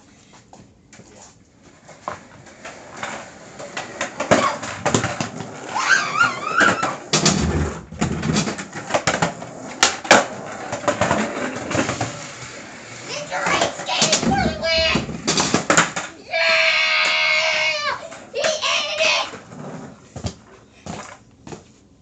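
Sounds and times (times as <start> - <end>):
skateboard clattering and rolling: 1.6 - 21.6
skateboard knocks and thwacks: 3.0 - 12.2, 13.4 - 16.1.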